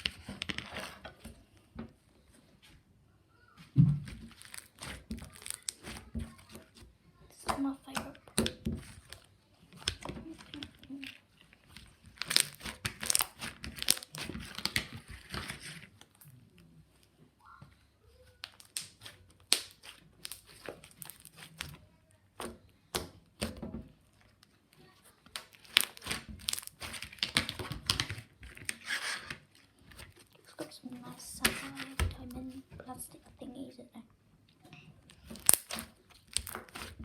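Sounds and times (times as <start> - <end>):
slime squishing: 3.6 - 33.4, 34.6 - 37.0
plastic pieces clicking: 9.8 - 16.2, 35.1 - 37.0.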